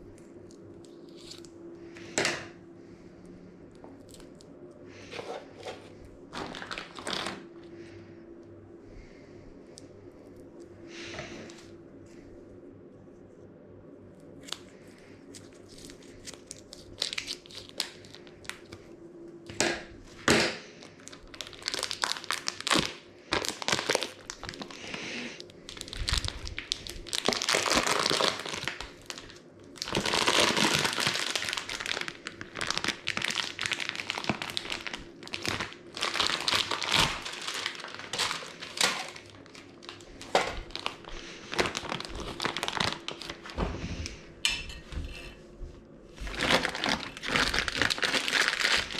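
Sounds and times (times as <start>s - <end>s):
crinkly packaging crumpling: 0.0s - 2.2s, 3.7s - 7.9s, 14.3s - 18.9s, 20.1s - 44.2s, 46.2s - 48.9s.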